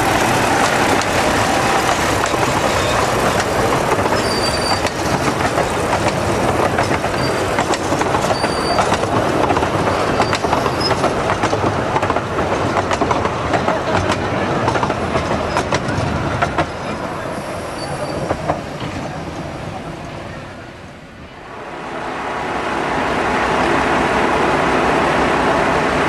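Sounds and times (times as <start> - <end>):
train carriages rattling: 0.0 - 21.1
wheels clicking over rail joints: 1.8 - 17.2
wheel flange squeals: 2.2 - 3.2, 4.1 - 5.0, 7.1 - 7.6, 8.2 - 9.0, 9.8 - 11.0, 17.4 - 18.5.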